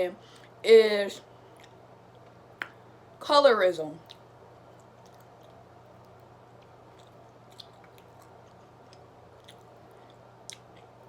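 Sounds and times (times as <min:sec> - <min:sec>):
close-up chewing: 0:01.5 - 0:02.4, 0:04.1 - 0:11.0
wet mouth clicks: 0:07.0 - 0:10.9.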